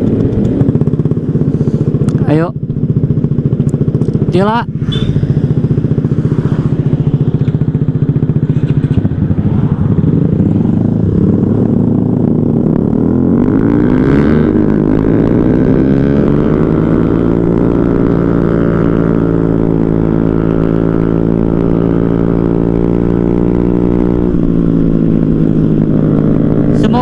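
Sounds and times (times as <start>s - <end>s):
motorcycle engine accelerating: 0.0s - 27.0s.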